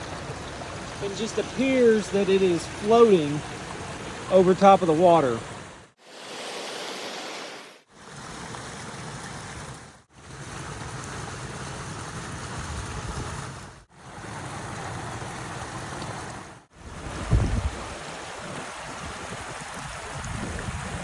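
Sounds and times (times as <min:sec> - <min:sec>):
water splashing over rocks: 0:00.0 - 0:21.0.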